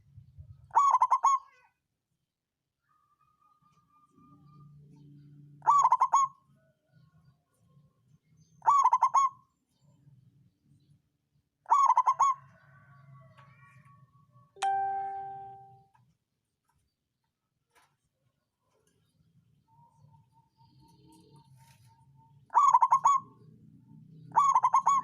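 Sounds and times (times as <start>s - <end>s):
dove cooing: 5.6s - 6.3s, 11.7s - 12.8s, 22.5s - 23.4s, 24.3s - 25.0s
bell-like ding: 14.6s - 15.8s.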